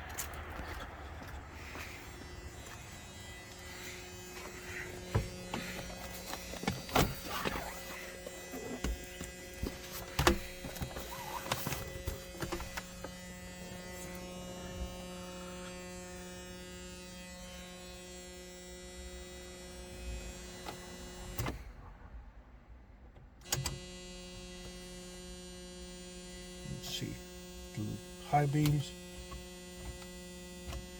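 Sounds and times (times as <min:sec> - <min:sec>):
electrical hum: 0:00.0 - 0:21.4.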